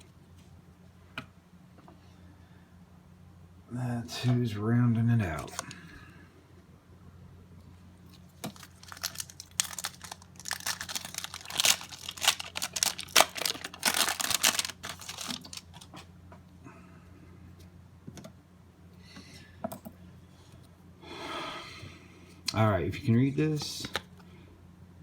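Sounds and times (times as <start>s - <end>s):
wrapper crinkling and tearing: 8.1s - 16.0s
cards clicking and rustling: 8.4s - 16.0s, 23.6s - 24.1s.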